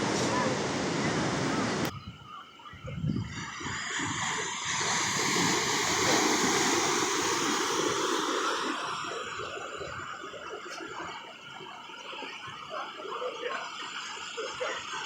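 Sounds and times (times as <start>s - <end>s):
ocean waves breaking on beach: 0.0s - 1.9s, 3.2s - 11.9s.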